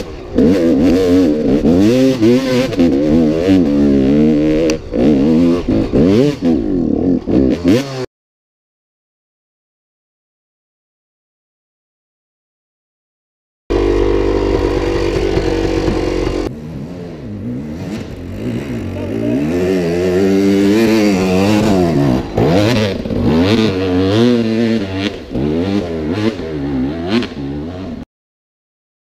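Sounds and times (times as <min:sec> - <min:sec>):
motorcycle engine revving: 0:00.0 - 0:08.1, 0:13.7 - 0:28.0.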